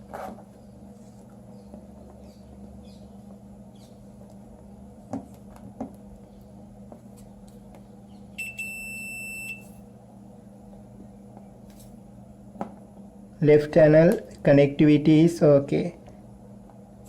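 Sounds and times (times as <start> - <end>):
multimeter continuity beep: 8.4 - 9.8.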